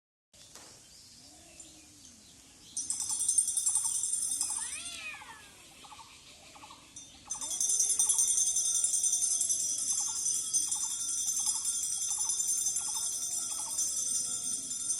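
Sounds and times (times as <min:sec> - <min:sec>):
high jingling bells: 0:02.8 - 0:06.0, 0:06.6 - 0:14.9
cats yowling in a fight: 0:04.4 - 0:05.8.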